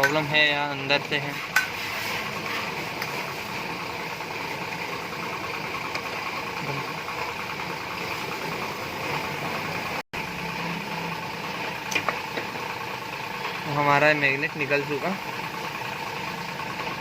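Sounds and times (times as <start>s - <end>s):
mechanical running noise: 1.9s - 17.0s.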